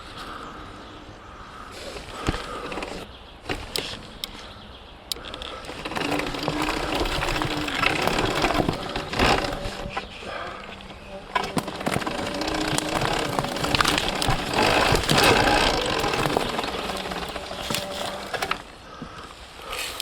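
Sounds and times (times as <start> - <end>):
electric motor whine: 5.1 - 18.8
chassis rattling: 5.1 - 19.2
bike knocking over rough ground: 5.3 - 19.3.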